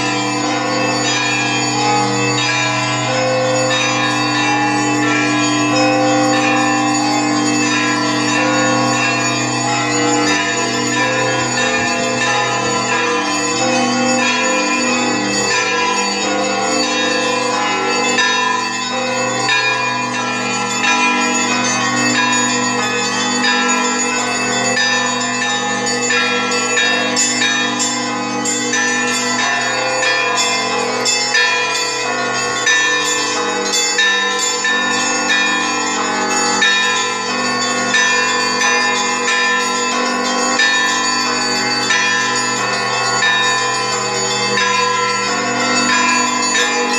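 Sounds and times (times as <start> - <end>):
deep tone of large bell: 0.0 - 46.9
small church bells ringing: 0.0 - 46.9.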